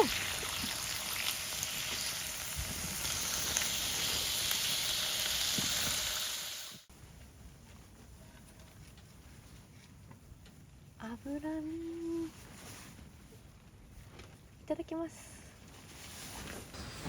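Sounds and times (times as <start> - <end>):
meat sizzling in hot fat: 0.0 - 6.9.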